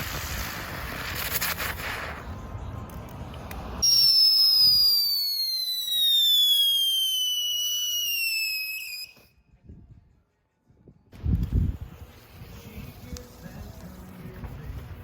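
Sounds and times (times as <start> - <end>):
whistling firework: 0.0 - 3.0, 3.8 - 9.6.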